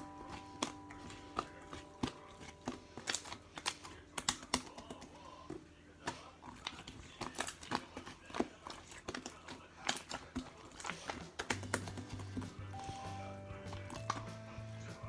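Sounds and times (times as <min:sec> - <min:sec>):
faint sustained music tones: 0:00.0 - 0:04.0, 0:12.0 - 0:15.0.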